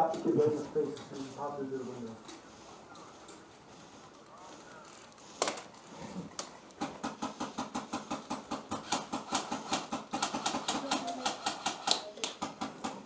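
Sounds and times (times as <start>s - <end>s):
airsoft rifle shots: 6.8s - 12.7s.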